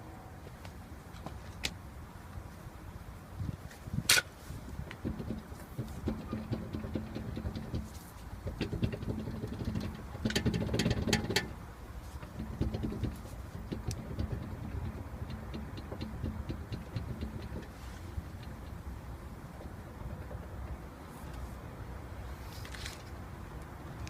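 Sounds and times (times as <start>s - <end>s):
car low mechanical rumble: 2.7s - 22.6s
sharp rattling clicks: 4.9s - 21.4s.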